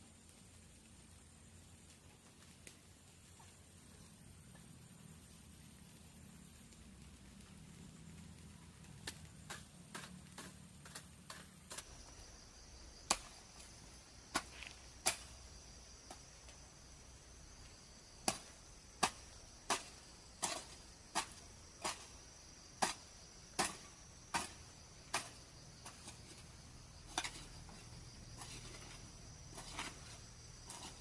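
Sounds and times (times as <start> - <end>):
high insect chirr: 0.0 - 31.0
hand tool striking wood: 9.0 - 11.9, 18.2 - 22.1, 22.8 - 23.0, 23.6 - 26.4.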